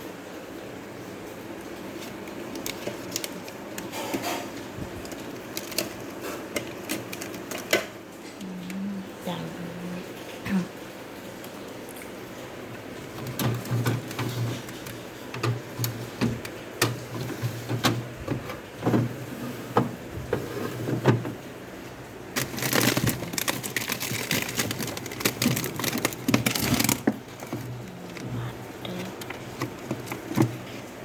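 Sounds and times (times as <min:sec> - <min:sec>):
packaging rustling: 0:01.8 - 0:07.8, 0:12.8 - 0:21.2, 0:22.3 - 0:31.0
containers clicking and knocking: 0:01.9 - 0:08.0, 0:12.7 - 0:21.4, 0:22.4 - 0:31.0.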